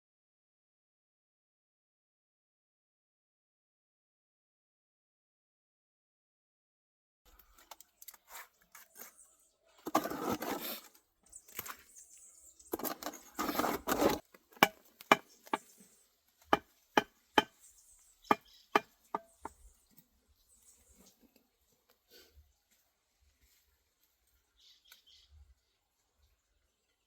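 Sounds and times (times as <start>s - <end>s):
scraping: 9.8s - 11.9s, 12.7s - 15.7s
hand tool knocking on stone: 14.6s - 15.7s, 16.5s - 17.6s, 18.3s - 19.6s.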